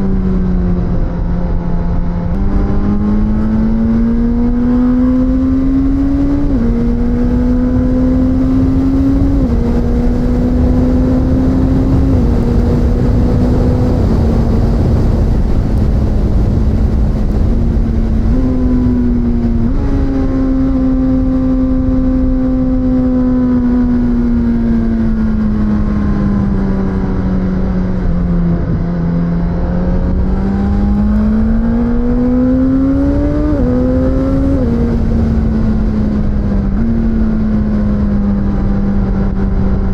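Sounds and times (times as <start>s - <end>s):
wind rushing: 0.0s - 22.6s, 23.4s - 39.0s
motorcycle engine revving: 0.0s - 39.9s.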